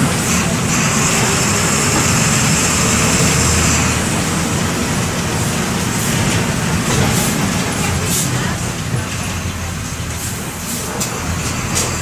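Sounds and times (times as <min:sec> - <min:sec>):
bus diesel engine running: 0:00.0 - 0:12.0.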